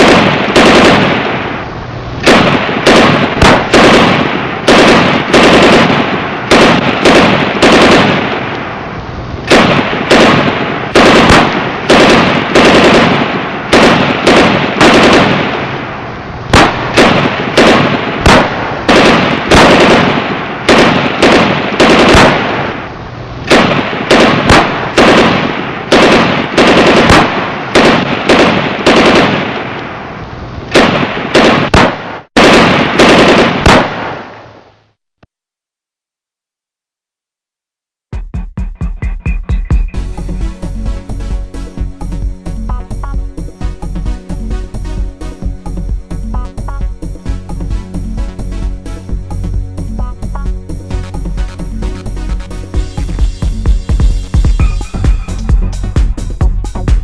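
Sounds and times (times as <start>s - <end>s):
rapid gunfire bursts: 0.0s - 1.4s, 2.2s - 8.5s, 9.5s - 15.8s, 16.5s - 22.8s, 23.5s - 29.7s, 30.7s - 34.2s.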